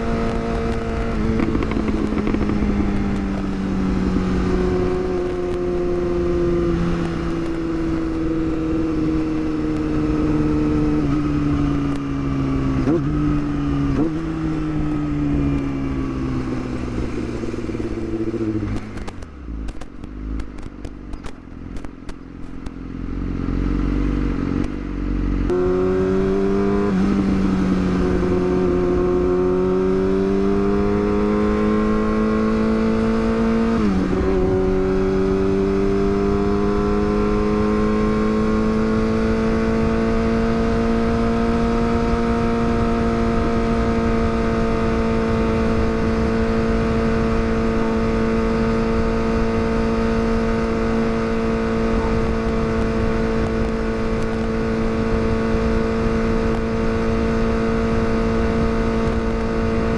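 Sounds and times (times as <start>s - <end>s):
motorcycle gear upshifts: 0.0s - 24.9s, 25.5s - 59.9s
motorcycle engine accelerating: 0.0s - 59.9s
scattered clicks: 0.7s - 3.5s.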